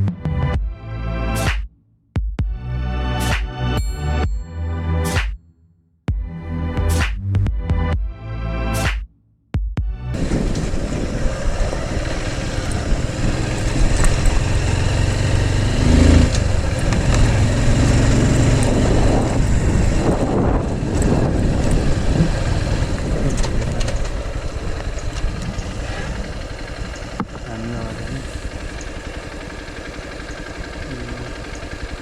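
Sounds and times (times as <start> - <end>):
motorcycle engine running: 10.1 - 32.0
road and rush noise: 10.1 - 32.0.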